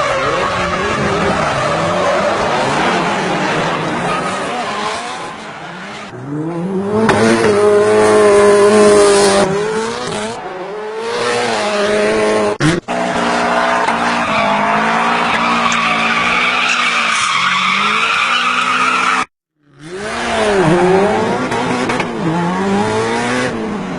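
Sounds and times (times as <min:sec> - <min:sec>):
tire squeal and skidding: 0:00.0 - 0:06.1, 0:12.9 - 0:19.3.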